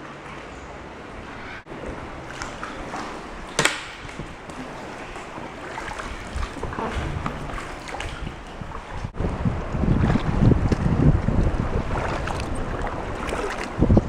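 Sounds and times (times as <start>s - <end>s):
paddle splashing water: 0.0s - 14.0s
knocks on canoe: 1.9s - 8.9s.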